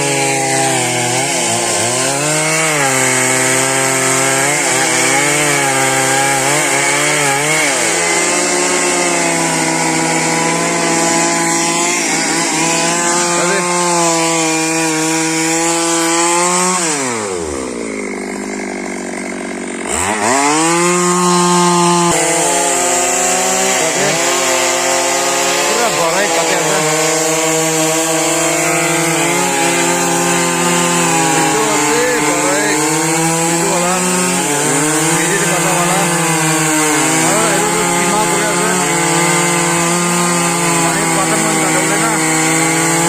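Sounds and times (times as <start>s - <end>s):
chainsaw cutting wood: 0.0s - 43.0s.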